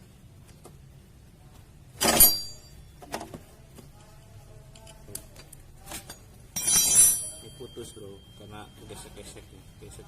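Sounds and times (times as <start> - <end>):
metal tools clinking: 5.9 - 8.4.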